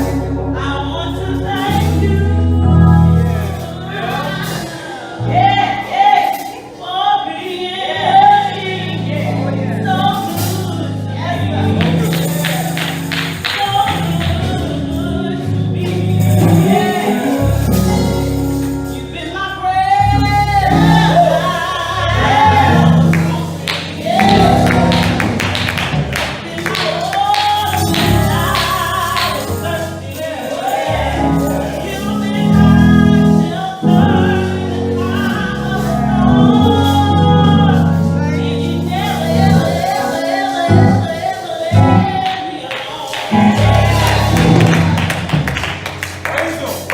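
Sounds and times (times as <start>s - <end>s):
group singing over a band: 20.6s - 45.0s
steady drum beat: 22.5s - 29.6s.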